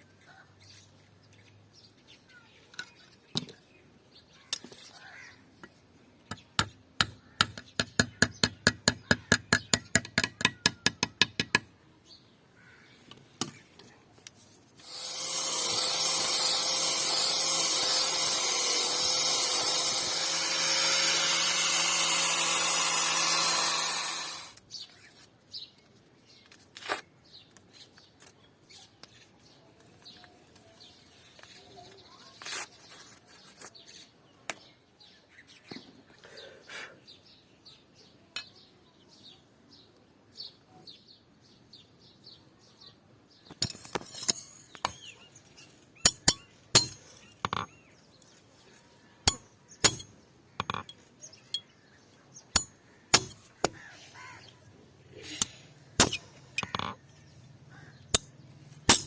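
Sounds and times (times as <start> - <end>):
sharp metallic clinks: 43.6 - 47.8, 49.3 - 51.7, 52.6 - 53.8, 55.4 - 57.0, 58.1 - 59.0.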